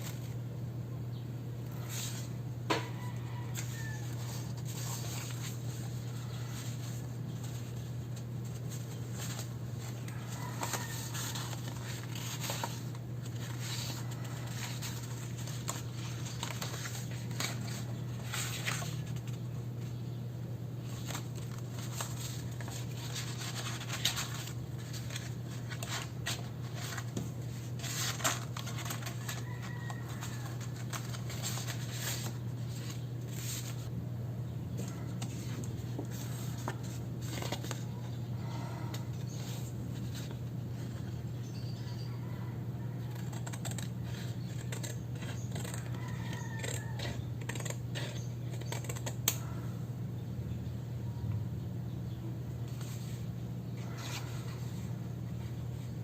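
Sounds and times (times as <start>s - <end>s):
steady low hum: 0.0s - 56.0s
paper scratching and rustling: 3.2s - 19.4s, 20.8s - 33.9s, 34.8s - 38.1s, 43.0s - 49.4s, 52.7s - 54.9s.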